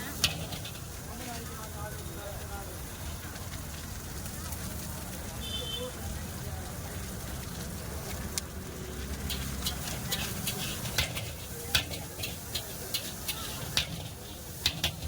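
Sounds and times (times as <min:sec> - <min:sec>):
metal spoon scraping a pot: 0:09.2 - 0:15.0.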